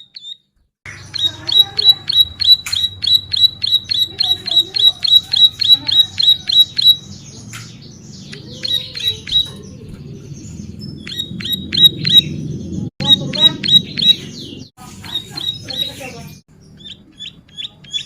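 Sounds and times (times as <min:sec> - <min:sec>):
bird singing sharp high notes: 0:00.0 - 0:09.5
bird chirps: 0:00.0 - 0:18.0.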